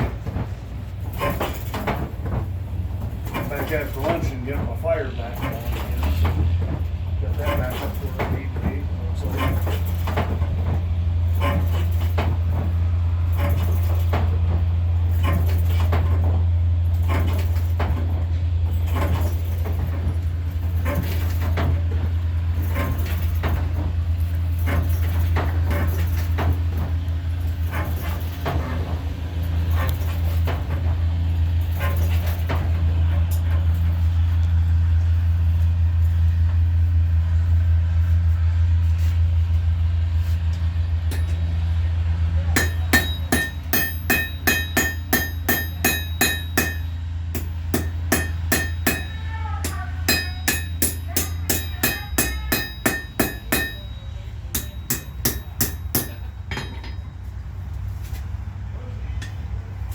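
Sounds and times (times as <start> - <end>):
steady low hum: 0.0 - 59.9
hammer striking steel on anvil: 41.1 - 41.5, 42.6 - 57.4.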